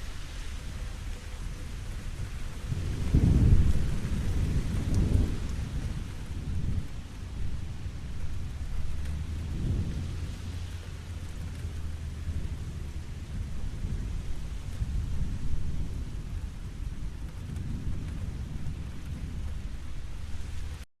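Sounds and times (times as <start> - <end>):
rain falling on a lake: 0.0 - 20.9
low rolling thunder: 1.4 - 20.8.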